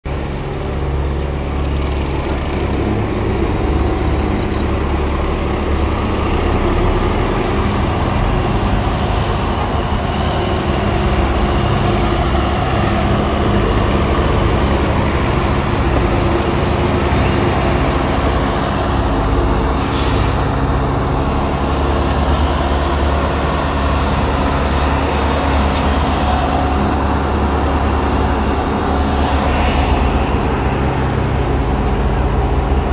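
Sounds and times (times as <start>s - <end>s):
diesel engine running steadily: 0.0s - 32.9s
air hiss: 19.8s - 20.5s.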